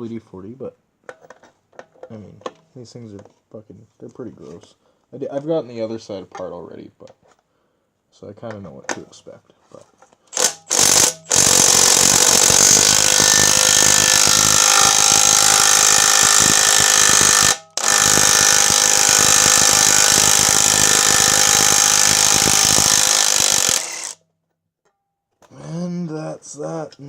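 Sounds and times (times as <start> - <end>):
impact wrench hammering on bolt: 10.4 - 24.2.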